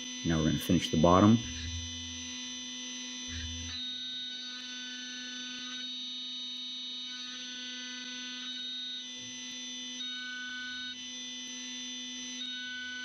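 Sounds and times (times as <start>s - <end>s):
low mains-like hum: 0.0s - 2.4s, 3.3s - 3.8s
high electronic whine: 0.0s - 4.0s.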